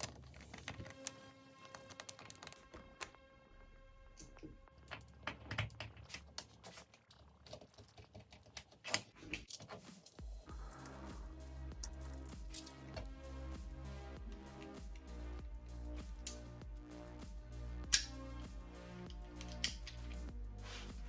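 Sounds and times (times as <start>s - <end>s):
music: 0.0s - 6.0s, 9.6s - 21.0s
small hard parts clicking: 4.8s - 9.7s, 19.1s - 20.2s.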